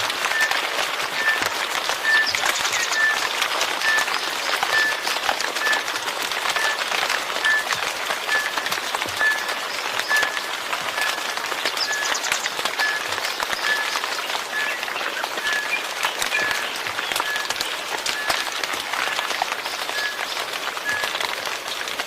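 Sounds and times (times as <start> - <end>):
steady rain: 0.0 - 22.0.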